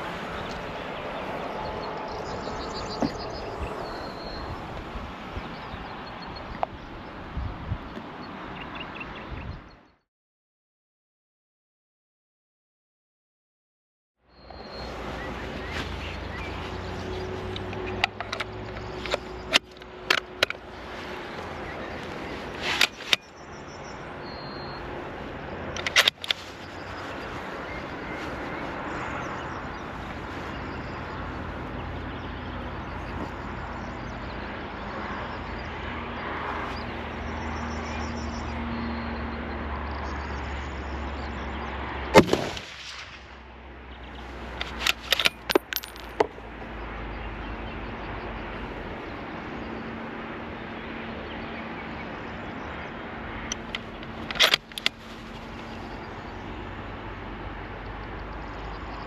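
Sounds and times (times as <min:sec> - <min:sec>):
sharp metallic clicks: 0:25.7 - 0:26.4, 0:44.6 - 0:46.3.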